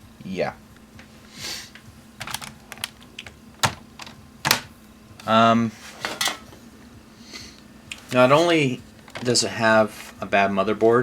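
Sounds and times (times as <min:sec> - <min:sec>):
laptop keys clicking: 0:02.2 - 0:04.6.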